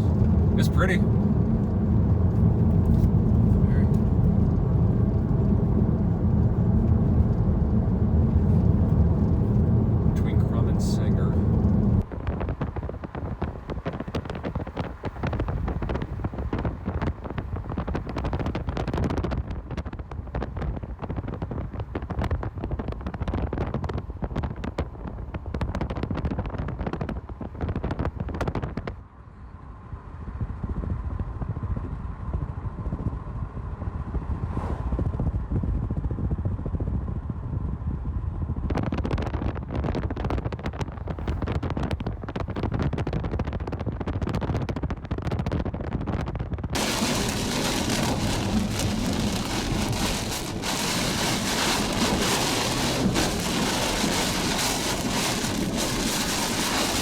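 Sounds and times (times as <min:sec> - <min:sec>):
storm wind buffeting microphone: 0:00.0 - 0:28.9, 0:30.4 - 0:57.0
vehicle rumble: 0:00.0 - 0:42.6, 0:46.8 - 0:57.0
heavy rain hiss: 0:46.8 - 0:57.0.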